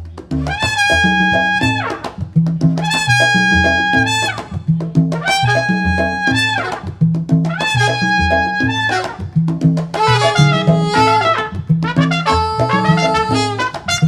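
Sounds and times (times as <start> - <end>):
bass line: 0.0 - 14.0
horn holding long high notes: 10.0 - 14.0.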